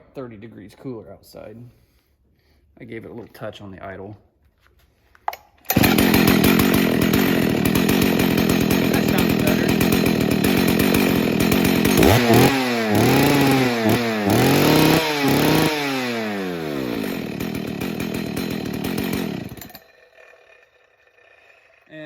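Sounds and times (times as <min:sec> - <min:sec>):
chainsaw engine idling and revving: 0:05.7 - 0:22.0.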